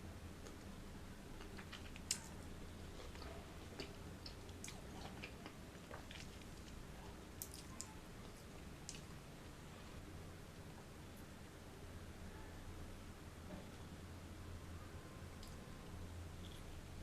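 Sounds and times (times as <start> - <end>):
fruit chewing: 1.4 - 9.2.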